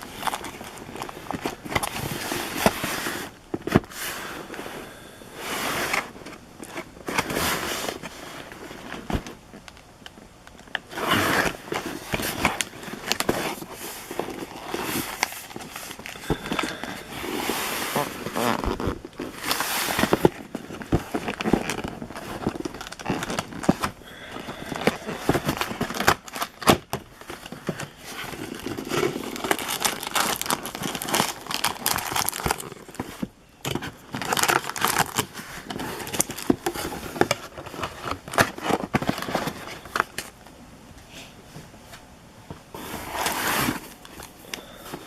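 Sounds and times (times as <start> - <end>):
foil wrappers crinkling: 0.0 - 3.9, 10.6 - 40.4
wrappers tearing: 14.3 - 20.2, 28.2 - 33.1, 34.0 - 36.8.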